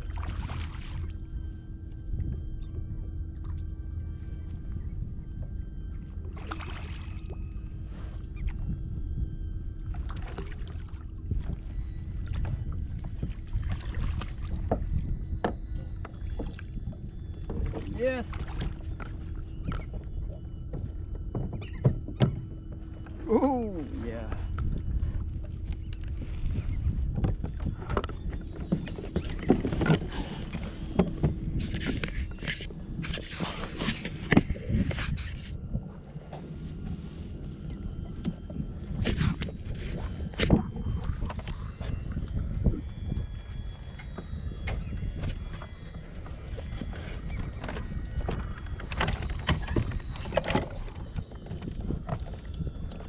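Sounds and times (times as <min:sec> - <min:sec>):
faint high whine: 0:00.0 - 0:53.0
wind rumble on microphone: 0:00.0 - 0:53.0
knocks and scrapes on kayak: 0:26.1 - 0:35.6.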